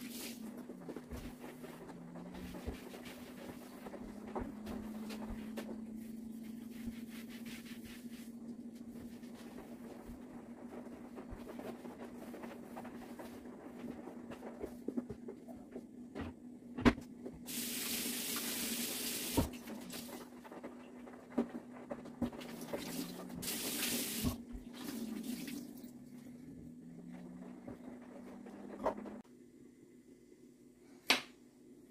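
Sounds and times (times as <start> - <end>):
steady low hum: 0.2 - 17.5
kitchen tap running: 17.5 - 20.1, 22.4 - 26.1.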